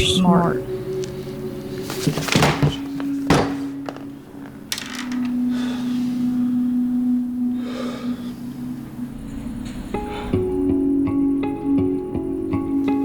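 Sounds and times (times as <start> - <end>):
background music low note: 0.0 - 2.1, 2.7 - 13.0
sharp knocks: 2.2 - 4.0.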